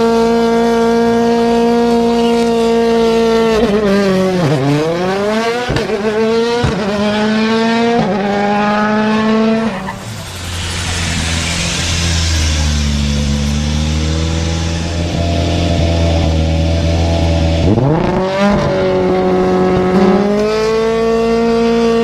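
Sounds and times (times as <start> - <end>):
racing car engine revving: 0.0 - 22.0
exhaust cracks: 5.6 - 20.8.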